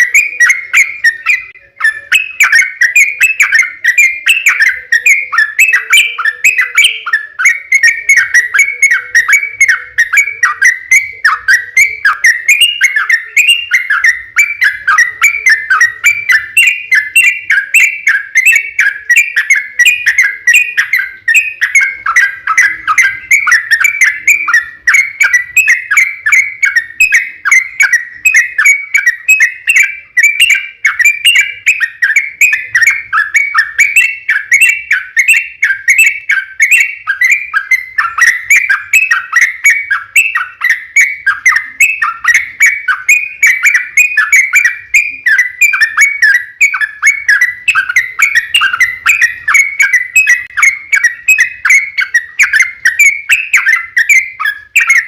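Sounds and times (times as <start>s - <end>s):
bird chattering song: 0.0s - 55.0s.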